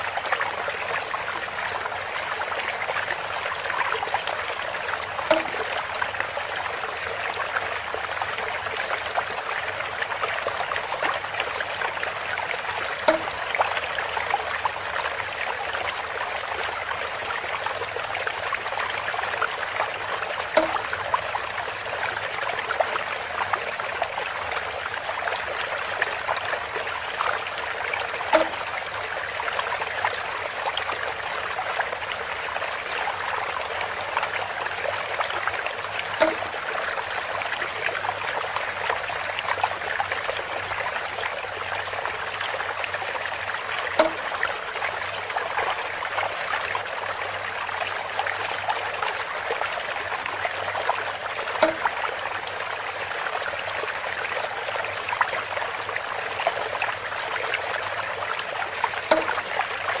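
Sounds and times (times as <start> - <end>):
water trickling from a spout: 0.0 - 60.0
bamboo knock: 5.3 - 5.8, 13.0 - 13.6, 20.6 - 21.0, 28.3 - 28.7, 36.2 - 36.6, 44.0 - 44.4, 51.6 - 51.9, 59.1 - 59.5.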